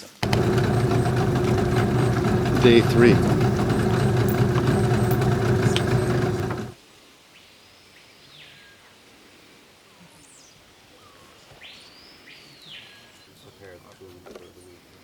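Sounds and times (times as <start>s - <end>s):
loud engine running: 0.0s - 6.8s
quiet outdoor background: 0.0s - 8.8s.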